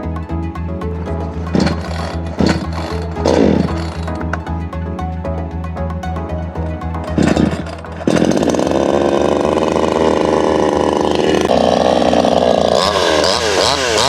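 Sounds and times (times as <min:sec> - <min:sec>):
chainsaw running at speed: 0:01.5 - 0:04.2, 0:07.1 - 0:14.0.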